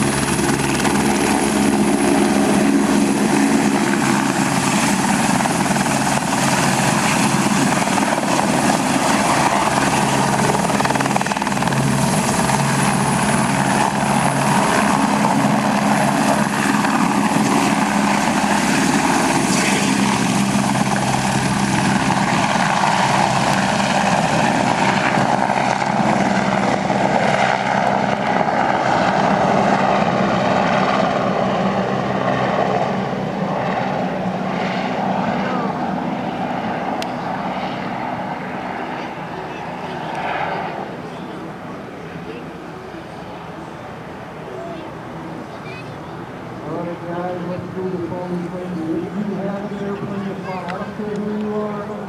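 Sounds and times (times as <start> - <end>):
helicopter rotor: 0.0 - 52.0
high turbine whine: 0.0 - 52.0.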